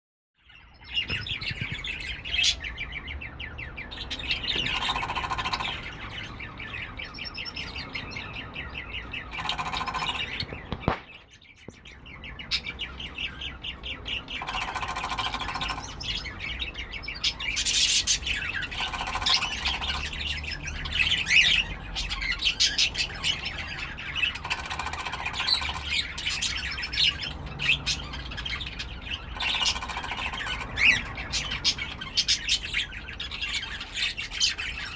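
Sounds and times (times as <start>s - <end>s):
cockatiels chirping and squawking: 0.4s - 34.9s.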